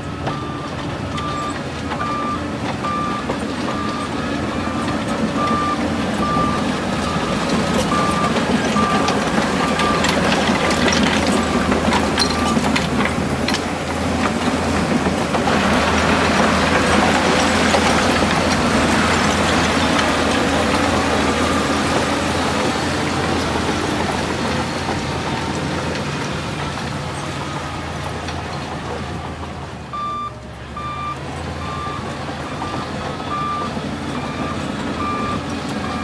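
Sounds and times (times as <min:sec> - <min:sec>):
reversing alarm beeping: 0:00.0 - 0:12.9, 0:29.9 - 0:36.0
heavy construction machinery running: 0:00.0 - 0:36.0
metal clanks and rattles: 0:00.2 - 0:29.6.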